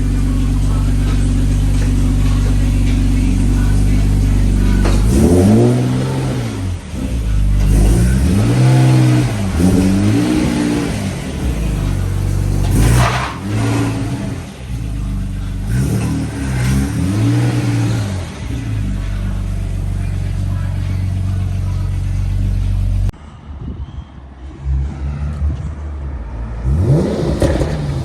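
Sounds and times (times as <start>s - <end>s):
car engine revving: 0.0s - 23.2s, 24.4s - 28.0s.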